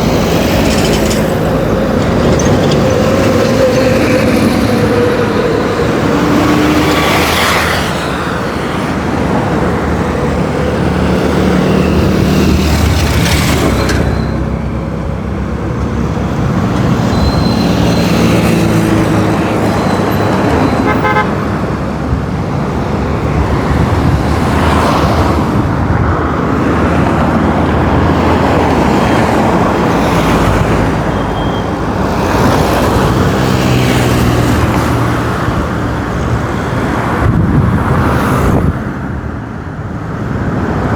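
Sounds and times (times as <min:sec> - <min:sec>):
cars and trucks passing: 0:00.0 - 0:40.9
car horn toots: 0:20.6 - 0:21.4.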